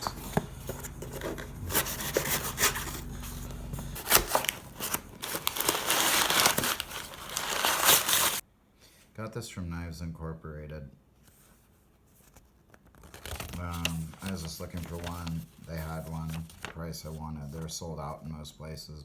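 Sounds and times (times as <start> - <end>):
packaging crinkling: 0.0 - 8.4, 12.6 - 16.8.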